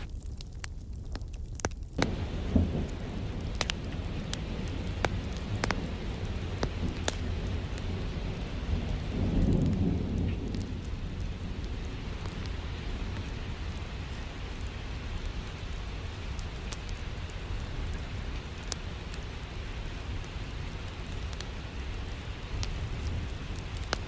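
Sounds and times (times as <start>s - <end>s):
sharp crackles: 0.0s - 24.0s
steady rain: 0.0s - 24.0s
thunder rumbling: 2.0s - 14.6s.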